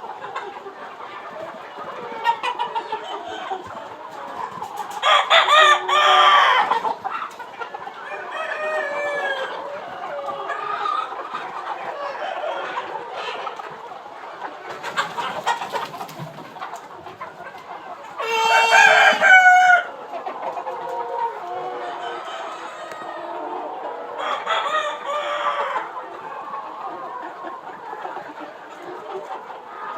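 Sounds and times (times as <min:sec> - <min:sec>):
chickens clucking: 0:00.0 - 0:29.9
roosters crowing: 0:05.0 - 0:06.7, 0:18.2 - 0:20.0, 0:24.2 - 0:25.8.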